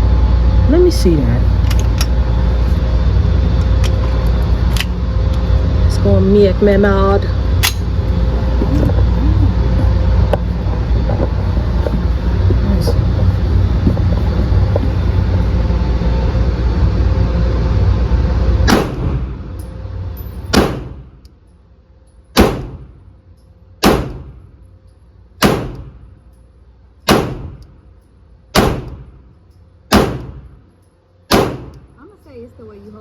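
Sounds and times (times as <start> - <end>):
low rumble: 0.0 - 33.0
pistol shots echoing: 20.5 - 21.0, 22.4 - 22.9, 23.8 - 24.4, 25.4 - 26.0, 27.1 - 27.6, 28.6 - 29.1, 29.9 - 30.5, 31.3 - 31.8.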